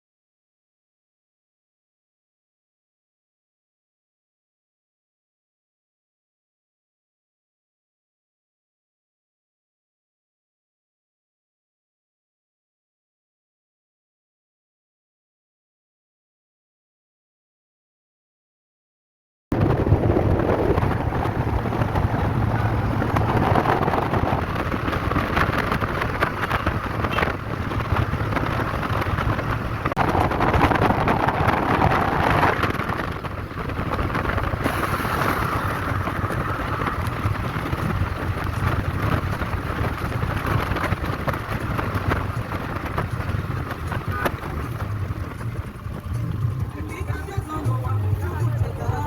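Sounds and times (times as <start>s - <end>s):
vehicle engine and road noise: 19.5s - 49.0s.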